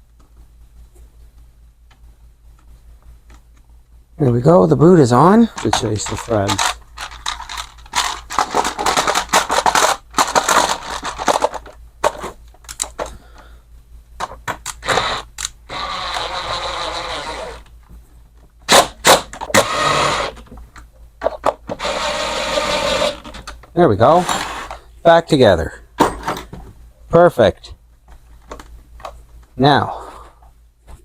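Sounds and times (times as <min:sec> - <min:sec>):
plastic and metal parts clicking: 0:05.6 - 0:13.2
long rasping scrapes: 0:24.2 - 0:24.8.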